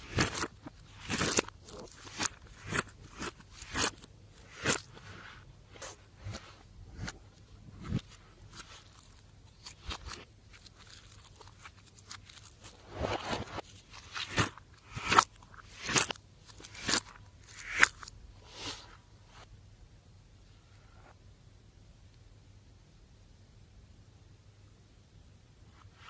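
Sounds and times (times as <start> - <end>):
slime crunchy pops and crackles: 0.0 - 4.9, 13.9 - 18.1.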